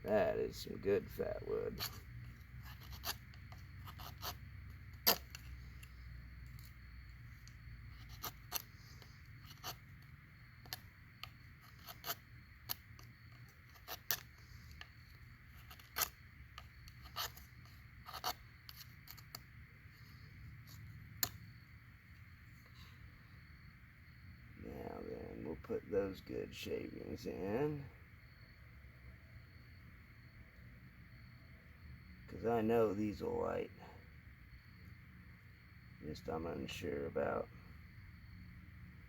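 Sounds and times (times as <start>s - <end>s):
knife scraping wood: 1.7s - 6.8s, 7.4s - 19.4s.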